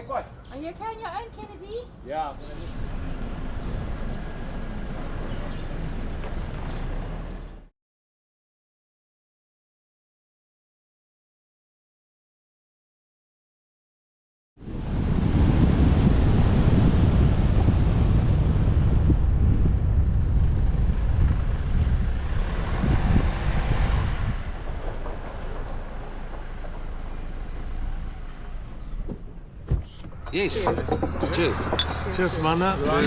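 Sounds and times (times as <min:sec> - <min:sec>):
vehicle engine and road rumble: 0:00.0 - 0:07.7, 0:16.1 - 0:33.0.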